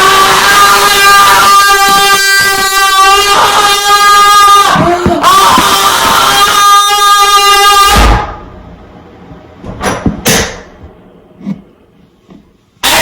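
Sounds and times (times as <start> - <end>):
loud horn-like blare: 0.0 - 8.5, 12.8 - 13.0
short noisy crashes: 7.7 - 8.8.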